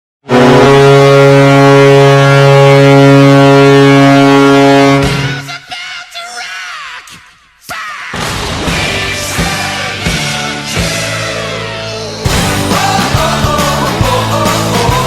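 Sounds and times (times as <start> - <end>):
arena goal horn: 0.2 - 5.5
music: 0.2 - 5.5, 8.2 - 15.0.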